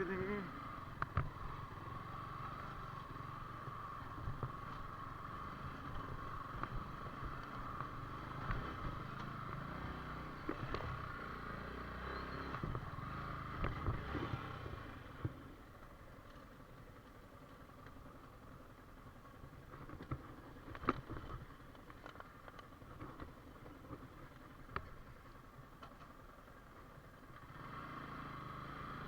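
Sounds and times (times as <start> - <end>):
motorcycle engine running: 0.0 - 29.0.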